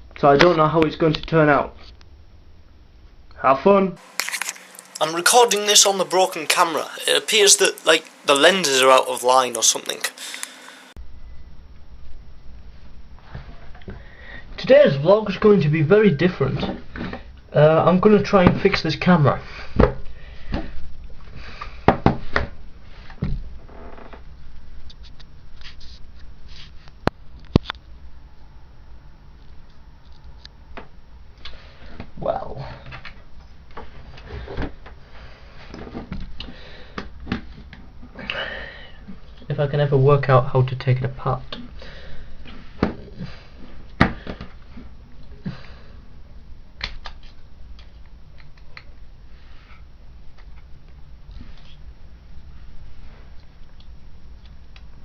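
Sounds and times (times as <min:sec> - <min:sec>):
camera handling rustling: 0:04.0 - 0:05.0.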